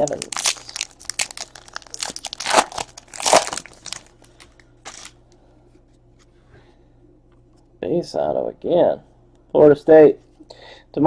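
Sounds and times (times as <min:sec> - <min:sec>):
plastic packaging crinkling: 0:00.0 - 0:05.2.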